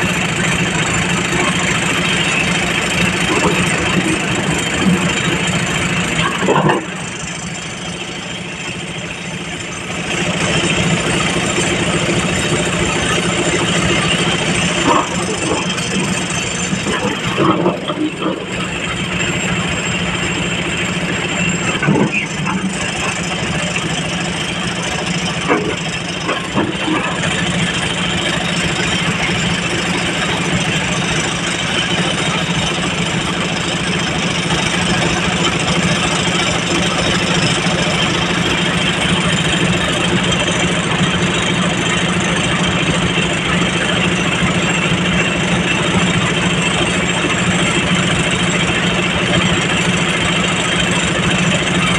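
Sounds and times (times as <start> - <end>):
heavy machinery engine running: 0.0 - 51.9.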